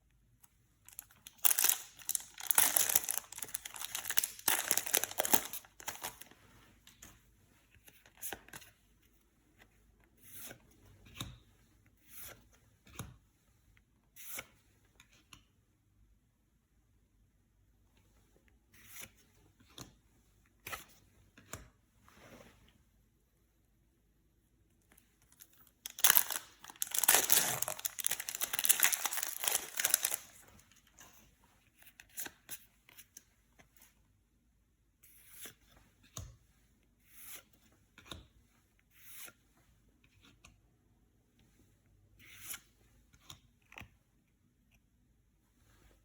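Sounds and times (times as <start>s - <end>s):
wrapper crinkling: 0.9s - 6.3s, 25.5s - 30.6s
wrapper tearing open: 0.9s - 6.3s, 25.8s - 30.4s.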